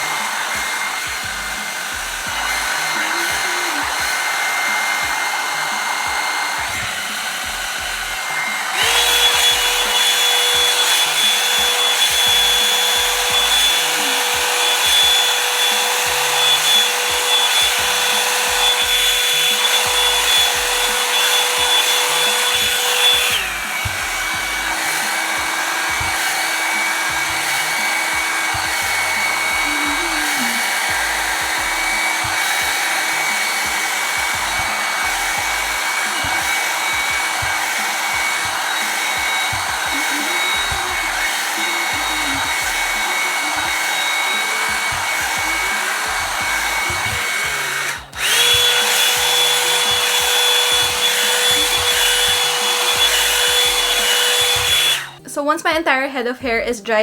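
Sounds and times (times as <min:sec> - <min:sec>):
hot-air brush motor whine: 0:00.0 - 0:55.3.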